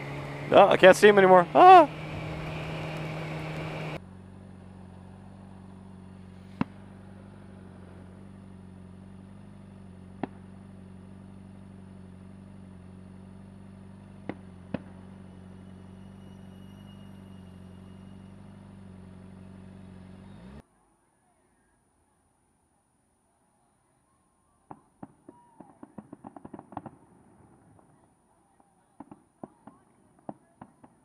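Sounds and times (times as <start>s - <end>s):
motorcycle engine humming: 0.0s - 20.6s.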